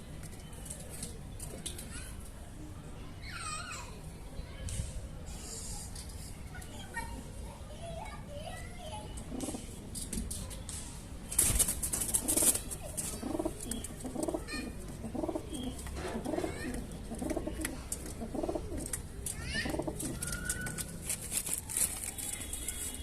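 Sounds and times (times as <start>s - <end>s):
pigeon cooing: 12.1s - 19.0s, 19.6s - 20.7s.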